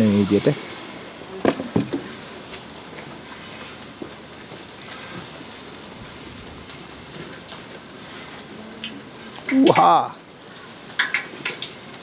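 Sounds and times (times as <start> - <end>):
fish deep-frying in oil: 0.0 - 12.0.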